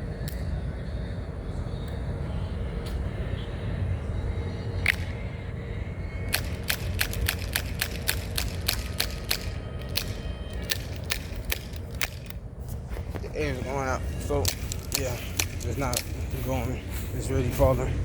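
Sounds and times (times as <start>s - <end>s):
bb pistol shots: 6.3s - 12.4s.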